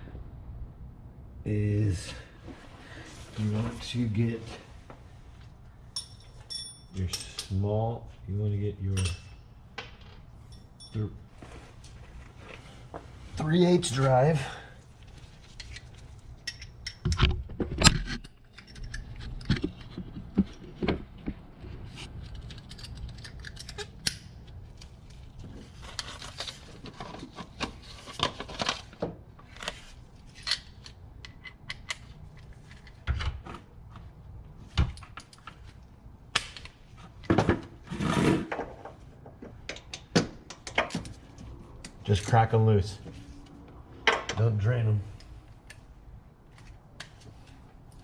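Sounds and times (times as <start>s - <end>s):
metal hand tools clinking: 5.9s - 7.6s.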